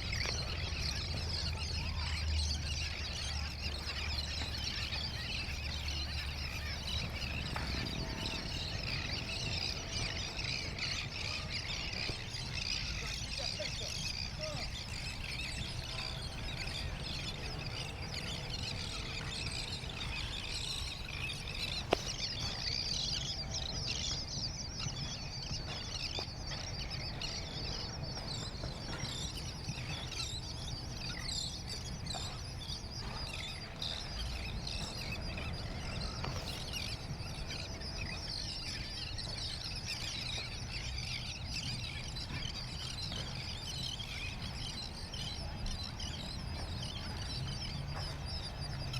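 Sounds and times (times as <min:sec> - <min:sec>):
steady low rumble: 0:00.0 - 0:38.5
small birds chirping: 0:00.0 - 0:48.9.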